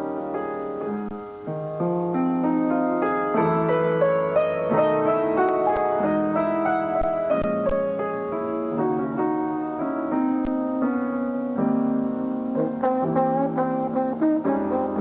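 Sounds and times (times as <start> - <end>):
jazz piano ballad: 0.0 - 15.0.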